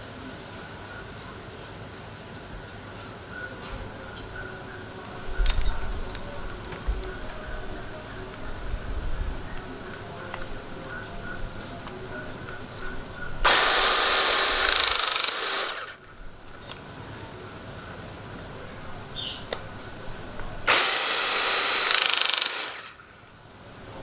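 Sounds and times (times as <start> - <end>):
hydraulic tool motor whining: 11.8 - 16.0, 20.3 - 23.0.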